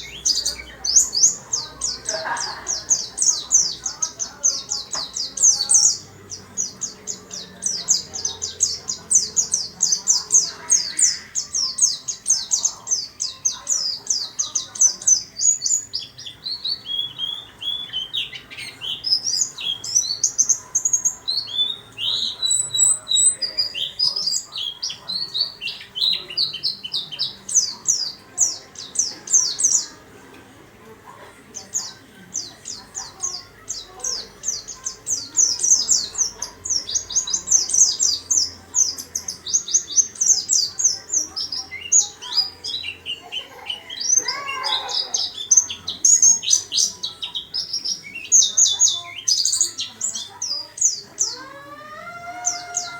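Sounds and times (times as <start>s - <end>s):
bird high-pitched chirping song: 0.0s - 30.1s, 31.6s - 52.9s.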